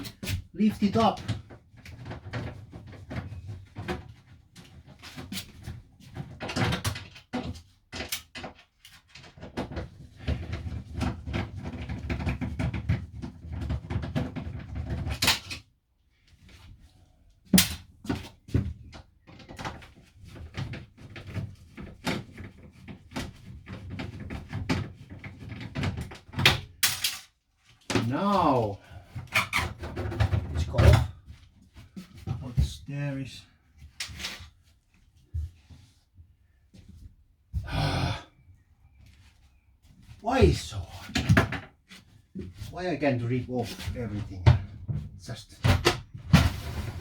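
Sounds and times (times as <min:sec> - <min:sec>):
wooden fittings knocking and scraping: 0:00.0 - 0:15.6, 0:18.0 - 0:26.9, 0:27.6 - 0:32.8.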